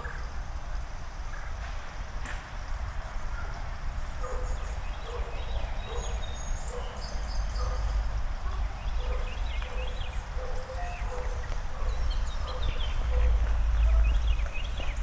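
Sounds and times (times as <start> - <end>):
birds chirping: 4.0 - 15.0.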